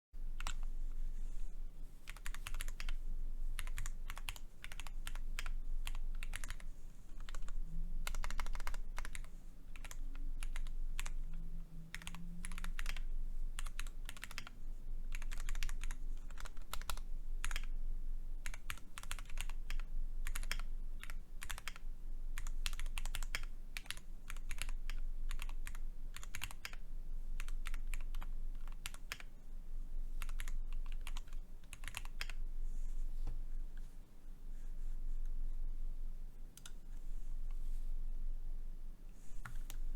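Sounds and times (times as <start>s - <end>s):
fast mechanical keyboard typing: 0.4s - 0.7s, 2.1s - 3.0s, 3.6s - 6.6s, 7.2s - 14.5s, 15.1s - 17.7s, 18.4s - 21.8s, 22.4s - 26.8s, 27.4s - 29.3s, 30.2s - 32.4s.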